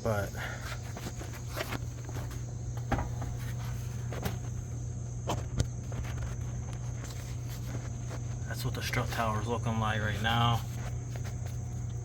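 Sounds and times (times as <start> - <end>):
low steady hum: 0.0 - 12.0
sharp knocks or footsteps: 1.6 - 4.5.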